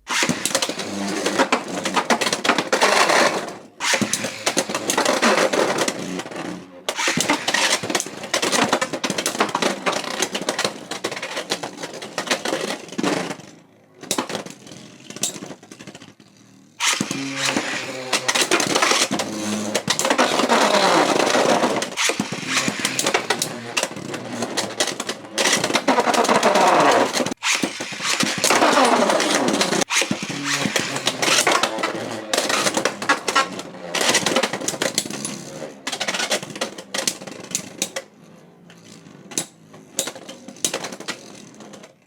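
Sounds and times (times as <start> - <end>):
spinning tops clashing in plastic arena: 16.8 - 41.9.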